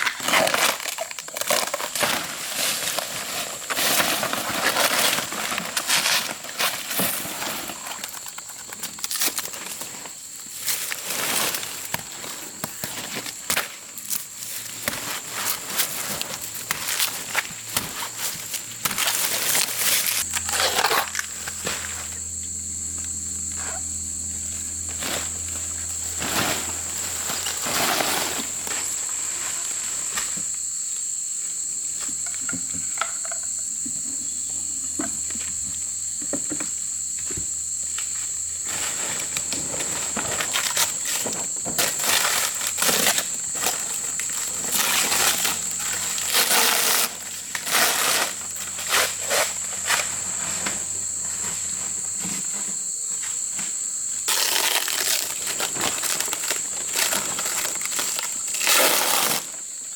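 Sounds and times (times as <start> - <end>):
rustling: 0.1 - 22.4, 23.6 - 30.6
high-pitched insect drone: 15.8 - 59.9.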